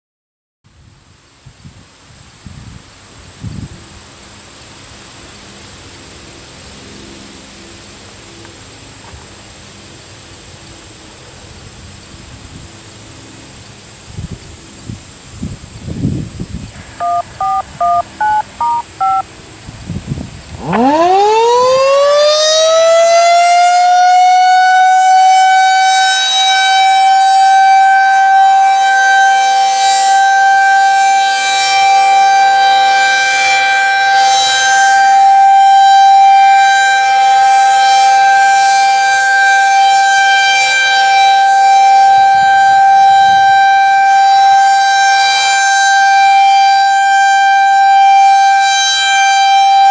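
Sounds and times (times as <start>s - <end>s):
rotating siren winding up: 17.0s - 19.2s, 20.6s - 22.4s
touch-tone beeps: 17.0s - 19.2s.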